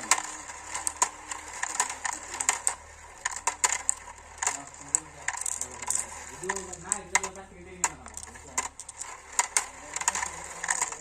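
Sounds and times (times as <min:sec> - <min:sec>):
marbles clacking on track: 0:00.0 - 0:11.0.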